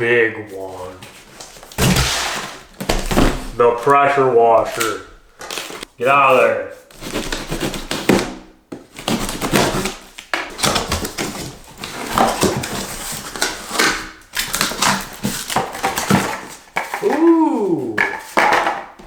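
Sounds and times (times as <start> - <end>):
cardboard box scraping and rustling: 0.8 - 4.0, 4.6 - 5.9, 6.9 - 8.2, 8.9 - 10.0, 10.6 - 16.7.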